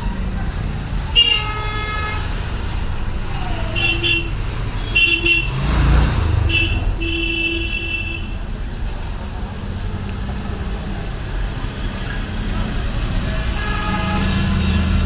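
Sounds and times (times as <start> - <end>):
traffic rumble: 0.0 - 15.0
vehicle horns honking: 1.1 - 2.3, 3.7 - 5.7, 6.4 - 8.4, 13.5 - 14.9
vehicle passing by: 5.4 - 7.0.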